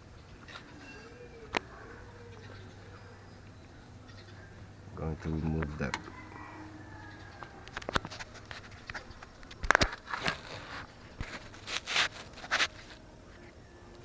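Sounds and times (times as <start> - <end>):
short scraping rasps: 4.0 - 13.0.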